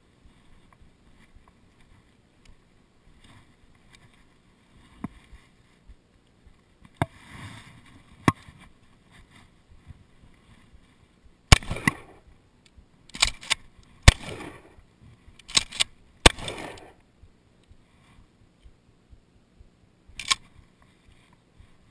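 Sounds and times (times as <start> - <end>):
shotgun shots echoing: 11.5 - 12.2, 14.0 - 14.8, 15.5 - 17.0
shotgun pump clacking: 13.1 - 14.3, 15.4 - 16.9, 20.1 - 20.5.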